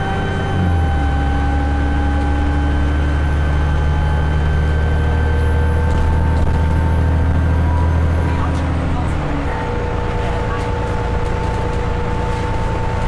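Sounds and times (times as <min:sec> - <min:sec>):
turbocharger whistling whine: 0:00.0 - 0:07.6
bus engine low drone: 0:00.0 - 0:13.0.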